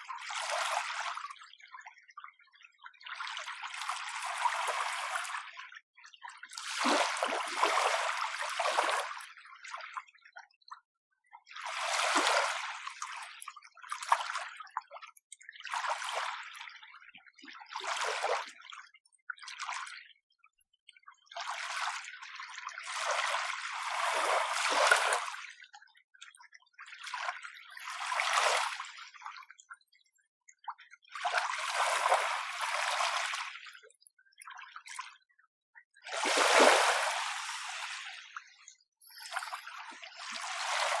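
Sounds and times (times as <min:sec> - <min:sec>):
small waves washing ashore: 0:36.2 - 0:38.1.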